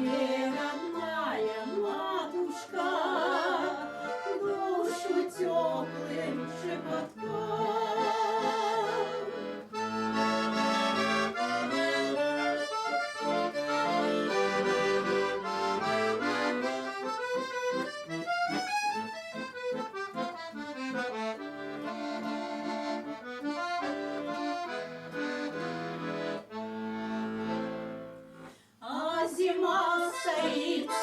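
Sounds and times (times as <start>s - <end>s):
instrumental melody over chords: 9.3s - 28.5s.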